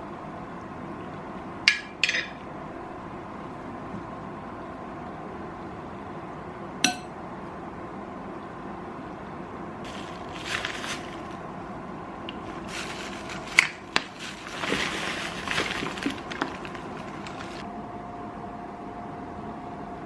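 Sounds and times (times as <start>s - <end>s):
faint steady hum: 0.0s - 20.0s
crinkling and rustling: 9.9s - 11.4s, 12.3s - 17.6s.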